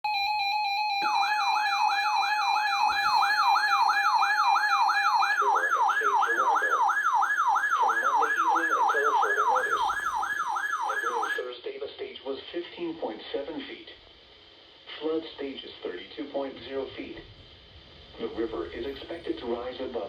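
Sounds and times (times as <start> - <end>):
electronic siren sweeping: 0.1 - 11.4.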